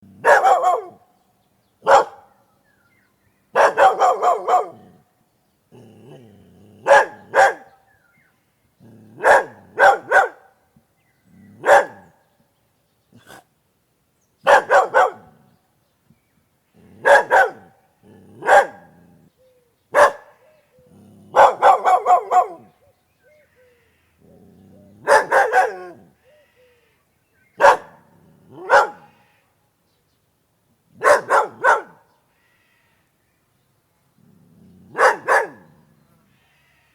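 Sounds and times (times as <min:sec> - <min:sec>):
dog barking: 0:00.2 - 0:01.0, 0:01.8 - 0:02.4, 0:03.5 - 0:04.9, 0:06.8 - 0:07.8, 0:09.2 - 0:10.5, 0:11.6 - 0:12.2, 0:14.5 - 0:15.4, 0:17.0 - 0:17.8, 0:18.4 - 0:18.9, 0:19.9 - 0:20.4, 0:21.3 - 0:22.7, 0:25.0 - 0:26.1, 0:27.6 - 0:29.1, 0:31.0 - 0:32.1, 0:34.9 - 0:35.8.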